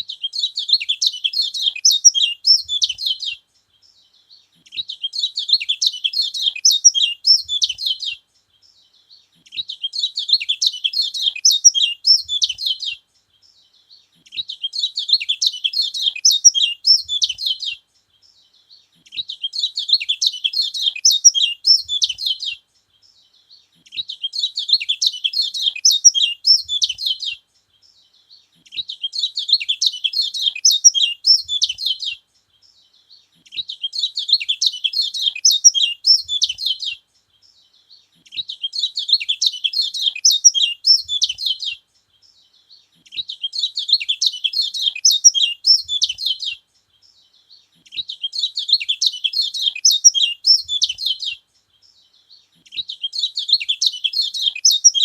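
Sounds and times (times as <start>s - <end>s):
bird high twittering song: 0.0s - 55.0s.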